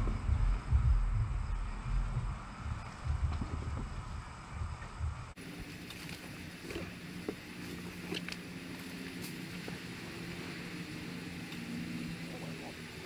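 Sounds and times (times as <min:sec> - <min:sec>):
low machine hum: 0:00.0 - 0:13.0.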